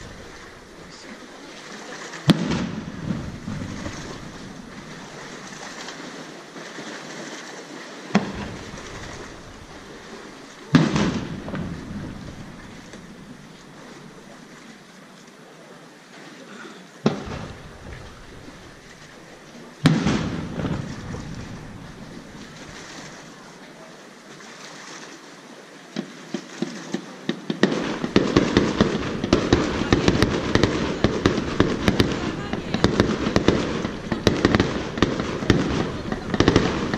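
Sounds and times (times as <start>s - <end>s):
crackling firework pops: 2.2s - 6.0s, 8.1s - 10.0s, 10.7s - 13.2s, 17.0s - 19.2s, 19.8s - 22.8s, 26.0s - 36.9s.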